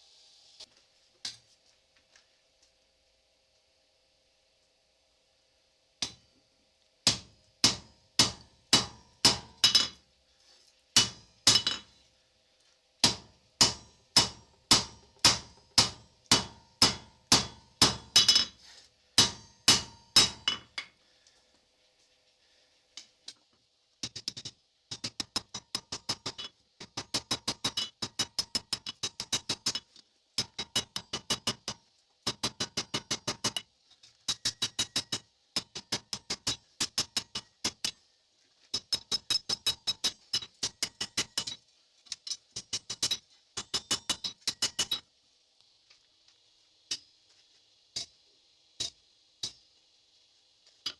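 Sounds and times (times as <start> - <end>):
hammer ringing on anvil: 7.1 - 10.0, 13.0 - 18.5, 19.2 - 20.6.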